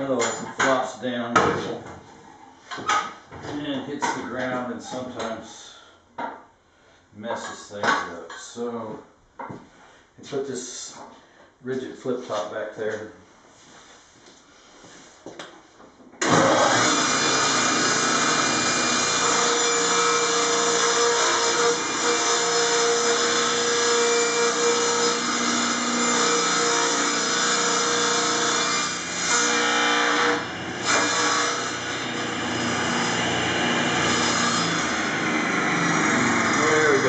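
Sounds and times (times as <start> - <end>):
table saw ripping plywood: 16.2 - 37.0.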